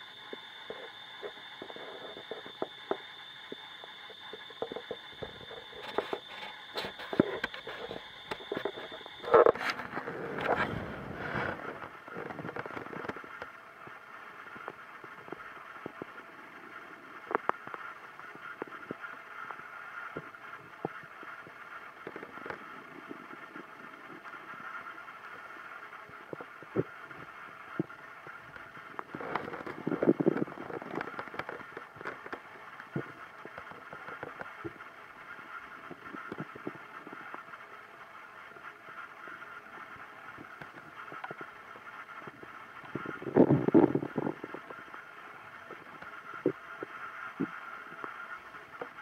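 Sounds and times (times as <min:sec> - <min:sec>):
steady hiss: 0:00.0 - 0:49.0
stomach rumbling gurgles: 0:00.0 - 0:49.0.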